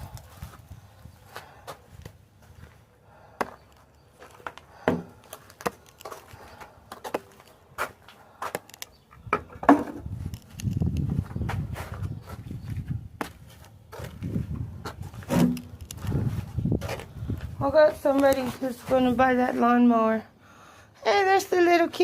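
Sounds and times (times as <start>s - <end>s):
yard debris knocking and clattering: 1.4s - 12.0s, 13.2s - 17.1s.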